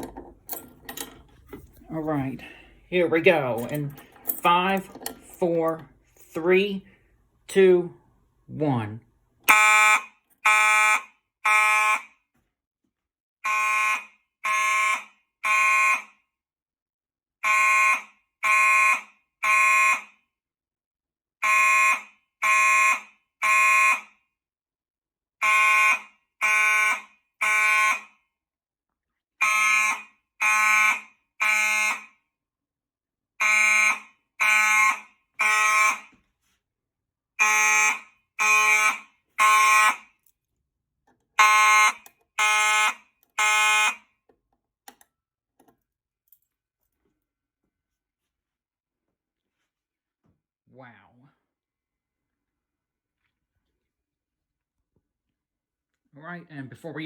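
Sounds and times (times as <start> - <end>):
fire alarm horn blasts: 9.5 - 12.2, 13.4 - 16.3, 17.4 - 20.2, 21.4 - 24.2, 25.4 - 28.3, 29.4 - 32.2, 33.4 - 36.2, 37.4 - 40.2, 41.4 - 44.2.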